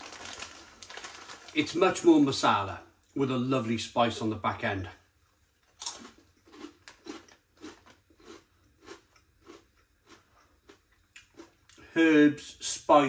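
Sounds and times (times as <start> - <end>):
person chewing crunchy snack: 5.7 - 11.8.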